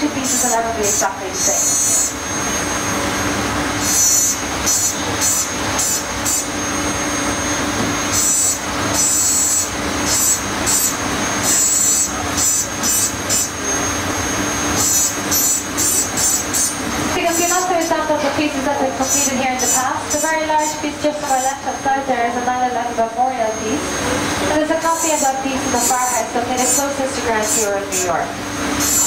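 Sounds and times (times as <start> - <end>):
glass grinding on engraving wheel: 0.2 - 2.8, 3.8 - 7.1, 8.0 - 17.9, 19.0 - 21.6, 24.8 - 28.0, 28.8 - 29.0.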